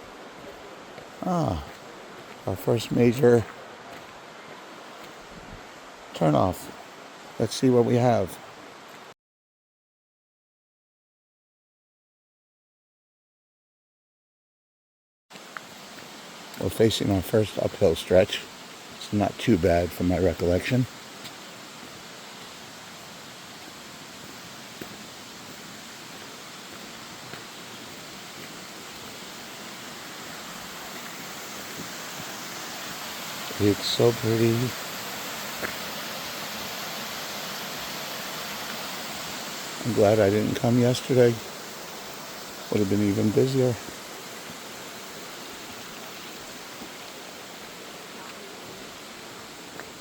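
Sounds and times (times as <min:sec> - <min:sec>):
creek water rushing: 0:00.0 - 0:09.2, 0:15.3 - 0:50.0
faint footstep tick: 0:21.2 - 0:21.4, 0:24.8 - 0:26.2, 0:27.3 - 0:27.5, 0:35.6 - 0:35.8, 0:49.7 - 0:49.9.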